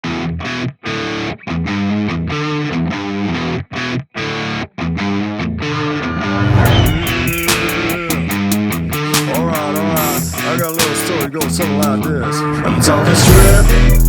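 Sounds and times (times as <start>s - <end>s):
distorted electric guitar chords: 0.0s - 14.0s
rising build: 5.6s - 9.5s.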